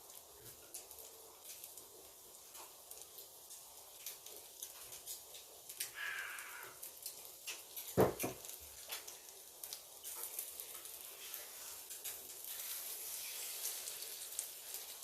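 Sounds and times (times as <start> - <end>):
dull knock: 8.0 - 8.4.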